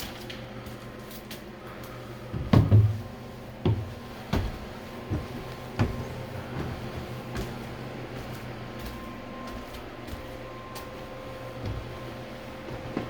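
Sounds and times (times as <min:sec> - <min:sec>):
footsteps climbing stairs: 0:01.8 - 0:13.0.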